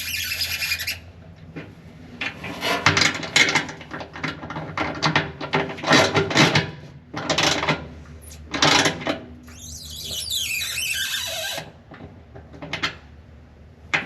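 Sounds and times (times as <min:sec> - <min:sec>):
hand tools scraping and clattering: 0:02.2 - 0:03.7.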